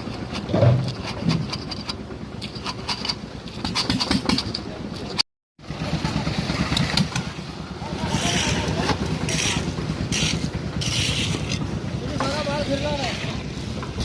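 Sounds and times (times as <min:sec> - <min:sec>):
concrete mixer engine running: 0:00.0 - 0:14.0.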